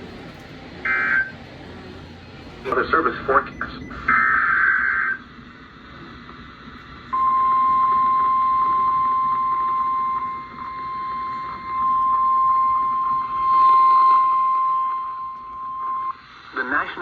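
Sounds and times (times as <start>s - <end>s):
high warning alarm tone: 0.0s - 5.4s, 7.1s - 16.2s
faint radio hiss: 0.0s - 7.1s, 16.1s - 17.0s.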